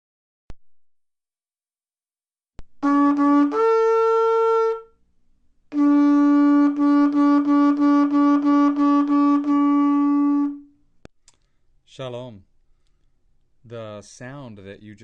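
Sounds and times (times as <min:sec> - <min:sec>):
shofar blowing: 0:02.8 - 0:05.0, 0:05.7 - 0:10.8.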